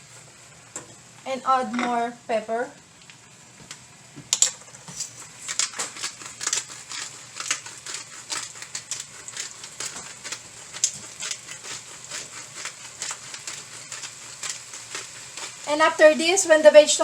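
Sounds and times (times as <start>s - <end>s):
food stirred in cooking pot: 4.4s - 16.7s.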